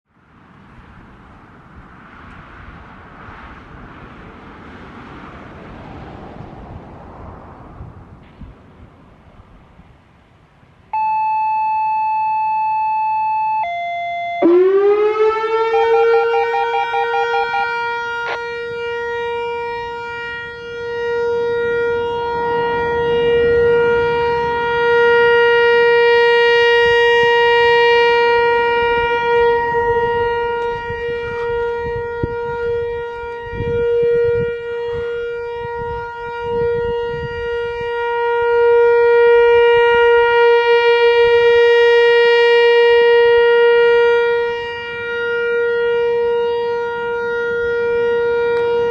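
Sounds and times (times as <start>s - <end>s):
outdoor warning siren: 10.9s - 48.9s.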